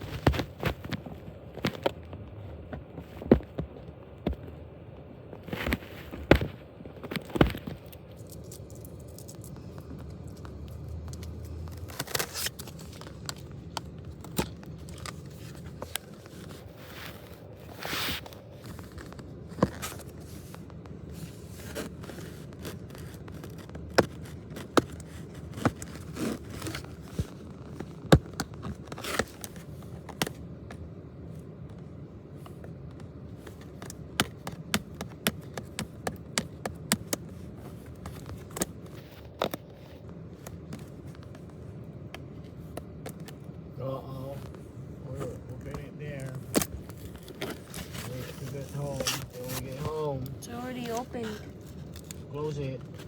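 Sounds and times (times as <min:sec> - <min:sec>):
packaging scraping and tearing: 0:07.0 - 0:30.3, 0:44.2 - 0:53.0
packaging rustling: 0:07.0 - 0:30.8, 0:44.2 - 0:53.0.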